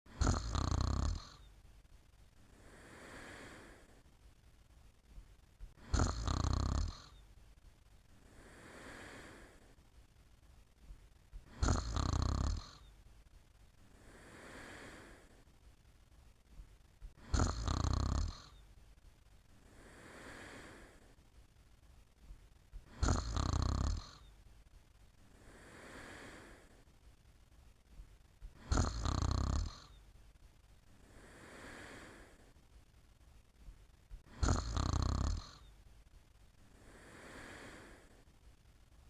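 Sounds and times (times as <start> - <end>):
snoring: 0.1 - 1.6, 2.4 - 4.1, 5.6 - 7.4, 8.2 - 9.8, 11.4 - 13.0, 13.8 - 15.5, 17.1 - 18.7, 19.6 - 21.2, 22.8 - 24.4, 25.3 - 26.8, 28.5 - 30.1, 30.9 - 32.6, 34.1 - 35.8, 36.6 - 38.3
soft breathy exhale: 2.4 - 4.1, 8.2 - 9.8, 13.8 - 15.5, 19.6 - 21.2, 25.2 - 26.9, 30.9 - 32.6, 36.6 - 38.4.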